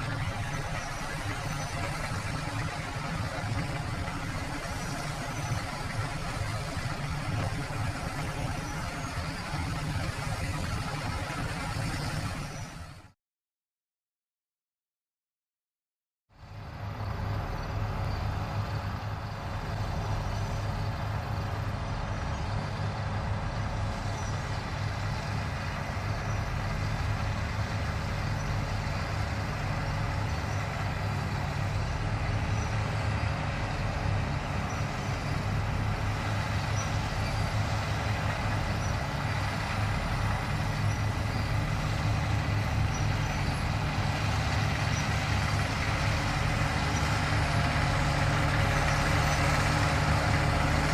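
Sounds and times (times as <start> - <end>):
combine harvester engine hum: 0.0 - 13.1, 16.4 - 50.9.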